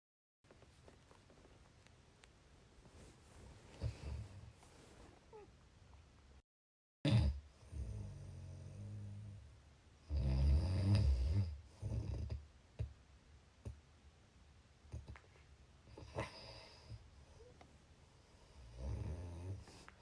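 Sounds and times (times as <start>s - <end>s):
quiet breathing: 2.8s - 5.5s, 15.0s - 20.0s
person snoring: 7.1s - 9.4s, 10.1s - 12.3s.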